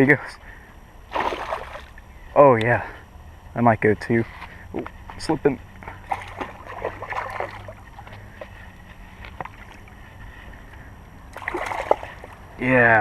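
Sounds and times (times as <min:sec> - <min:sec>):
water splashing and sloshing: 0:01.1 - 0:02.1, 0:05.7 - 0:12.6.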